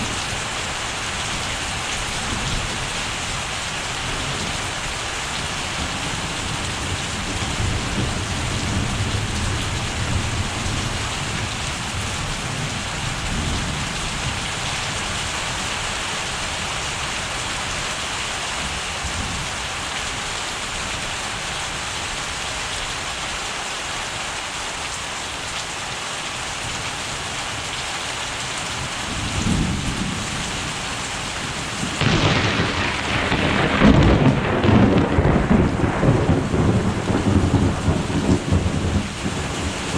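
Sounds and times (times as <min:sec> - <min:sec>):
steady rain: 0:00.0 - 0:39.9
rolling thunder: 0:31.4 - 0:39.9.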